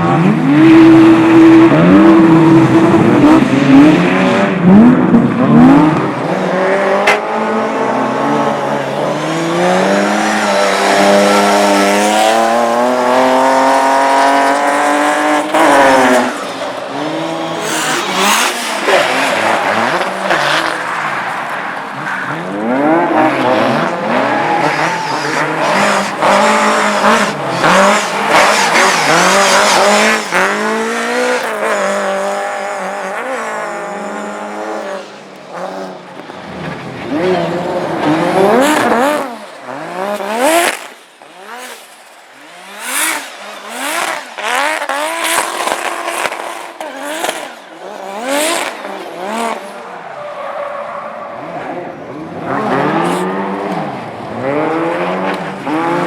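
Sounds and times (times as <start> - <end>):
race car engines revving: 0.0 - 56.0
tyre squeal: 24.1 - 30.4.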